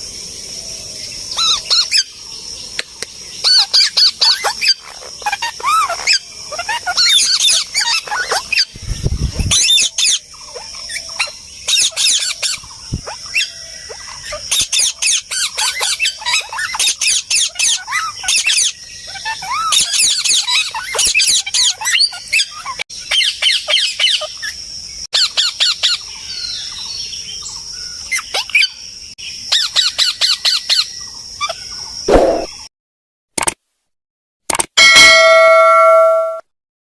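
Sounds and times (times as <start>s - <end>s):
parrots squawking: 1.4s - 2.0s, 3.4s - 8.7s, 9.5s - 24.3s.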